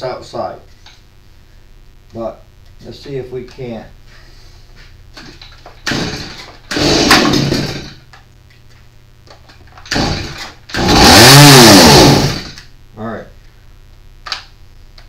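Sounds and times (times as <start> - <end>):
recoil starter pulls: 5.8 - 8.0, 9.8 - 12.6
chainsaw engine running: 5.9 - 8.0, 9.9 - 12.6.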